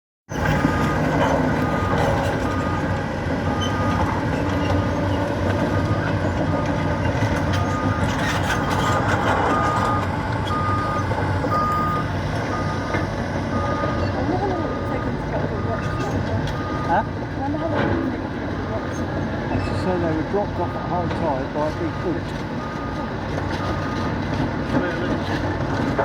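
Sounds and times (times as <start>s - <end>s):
diesel engine running: 0.3s - 26.0s
warning alarm beeping: 8.8s - 17.1s.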